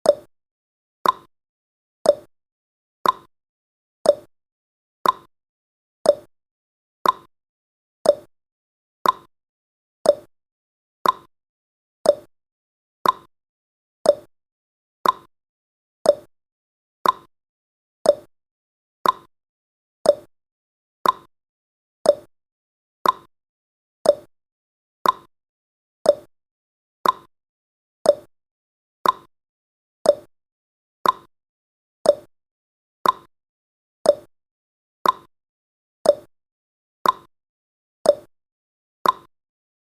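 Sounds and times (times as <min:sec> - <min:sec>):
clock ticking: 0:03.0 - 0:03.3, 0:05.0 - 0:05.3, 0:07.0 - 0:07.3, 0:09.0 - 0:09.3, 0:11.0 - 0:11.3, 0:13.0 - 0:13.3, 0:15.0 - 0:15.3, 0:16.1 - 0:16.3, 0:17.0 - 0:17.3, 0:18.1 - 0:18.3, 0:19.0 - 0:19.3, 0:21.0 - 0:21.3, 0:22.1 - 0:22.3, 0:23.0 - 0:23.3, 0:24.0 - 0:24.3, 0:25.0 - 0:25.3, 0:26.1 - 0:26.3, 0:27.0 - 0:27.3, 0:28.1 - 0:28.3, 0:29.0 - 0:29.3, 0:30.1 - 0:30.3, 0:31.0 - 0:31.3, 0:32.1 - 0:32.3, 0:33.0 - 0:33.3, 0:34.1 - 0:34.3, 0:35.0 - 0:35.3, 0:36.1 - 0:36.3, 0:37.0 - 0:37.3, 0:38.1 - 0:38.3, 0:39.0 - 0:39.3.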